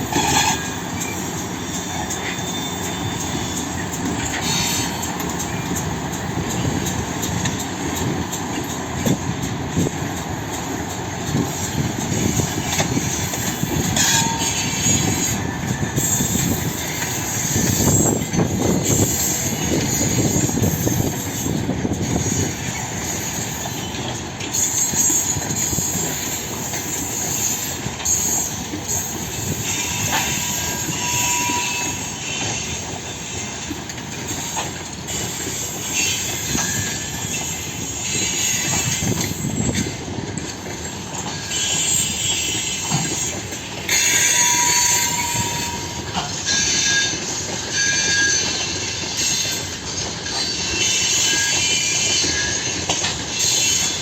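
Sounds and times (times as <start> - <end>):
train wheels rumbling on rails: 0.0 - 54.0
wheels squealing against rails: 0.0 - 54.0.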